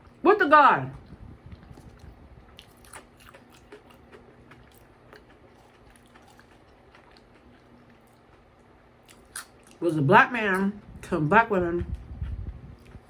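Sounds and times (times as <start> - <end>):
faint steady hum: 0.0 - 13.0
quiet chewing: 0.9 - 9.9, 11.8 - 13.0.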